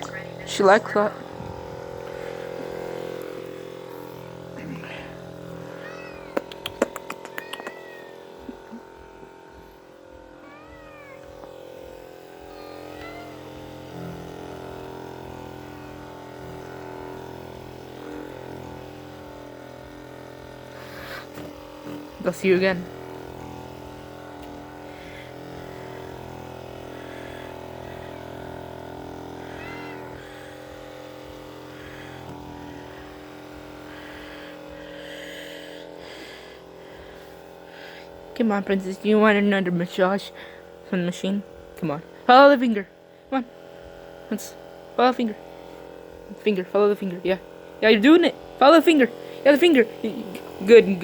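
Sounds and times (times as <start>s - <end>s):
electric massager humming: 0.0s - 51.0s
cat meowing: 5.6s - 8.7s, 10.4s - 11.4s, 12.5s - 13.4s, 29.4s - 30.2s.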